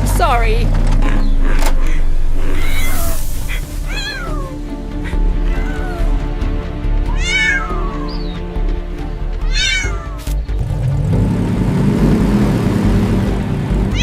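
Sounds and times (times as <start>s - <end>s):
background music: 0.0s - 14.0s
cat meowing: 2.3s - 6.2s, 7.1s - 8.1s, 9.4s - 10.2s.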